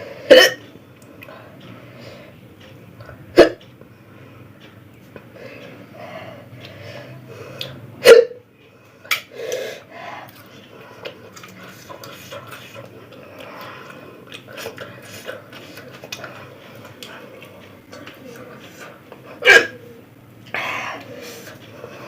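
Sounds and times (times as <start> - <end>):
woman hiccuping: 8.0 - 8.4, 19.4 - 19.8
breathing and mouth sounds: 8.8 - 22.0.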